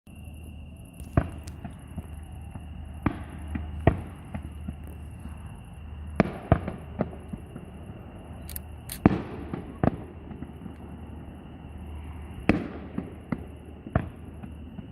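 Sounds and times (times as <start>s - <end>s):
small firework pops: 1.0s - 5.5s, 6.1s - 7.7s, 8.6s - 11.0s, 12.4s - 14.9s
fireworks bangs: 1.0s - 14.9s.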